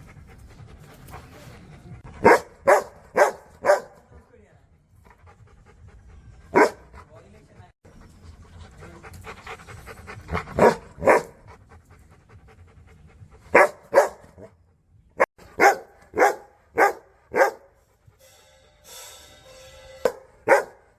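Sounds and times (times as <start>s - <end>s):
dog panting: 0.0s - 3.0s, 4.6s - 18.2s
deep dog barks: 2.2s - 4.1s, 6.5s - 6.9s, 10.6s - 11.4s, 13.5s - 14.5s, 15.2s - 17.7s.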